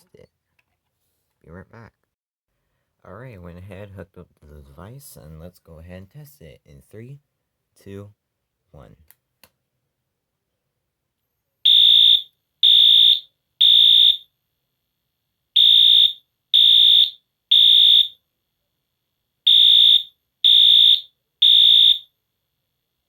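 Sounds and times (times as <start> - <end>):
fire alarm horn beeping: 11.7 - 14.3, 15.6 - 18.2, 19.5 - 22.1.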